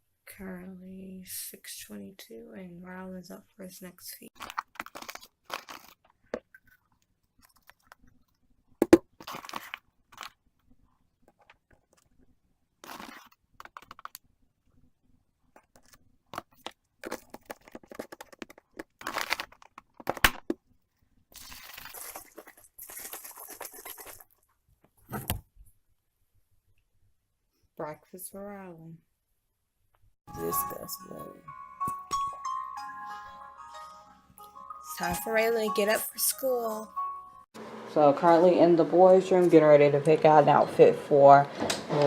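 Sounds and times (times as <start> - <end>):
rustling and scraping: 9.2 - 14.2.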